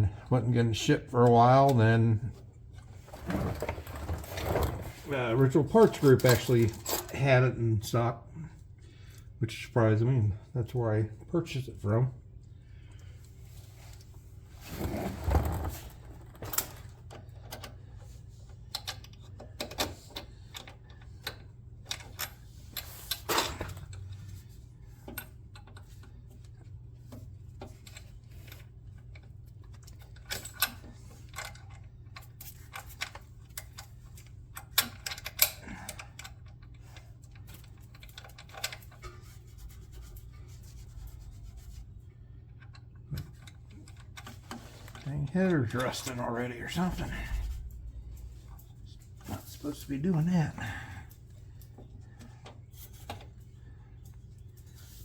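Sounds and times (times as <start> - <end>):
steady low hum: 23.8 - 55.0.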